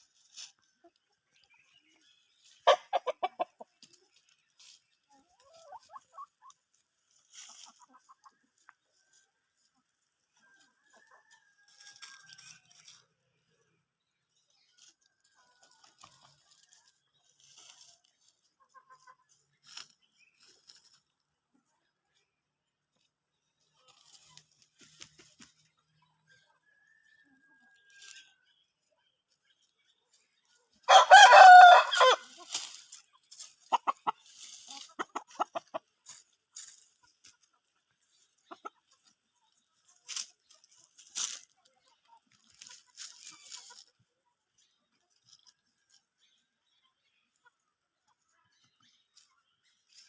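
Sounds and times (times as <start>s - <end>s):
chicken clucking: 0.0s - 50.0s
rooster crowing: 30.9s - 32.2s.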